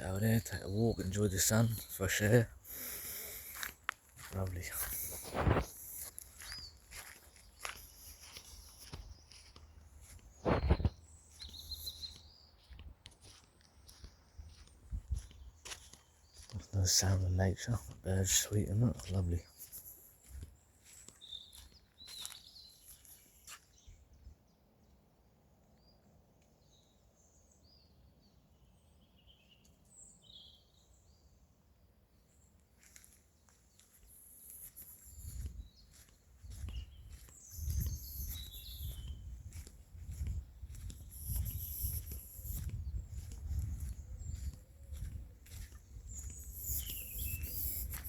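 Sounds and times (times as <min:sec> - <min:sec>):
small birds chirping: 0:00.0 - 0:31.5, 0:32.1 - 0:48.0
low thuds on microphone: 0:10.4 - 0:10.9.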